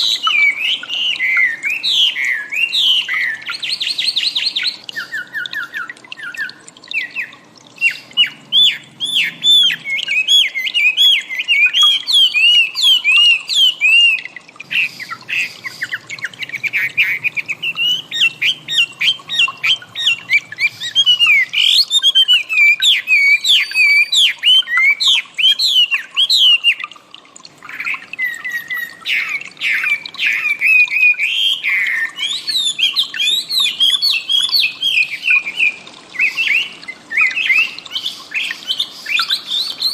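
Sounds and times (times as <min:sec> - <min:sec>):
bird chirping rapidly: 0:00.0 - 0:26.8, 0:27.6 - 0:39.9.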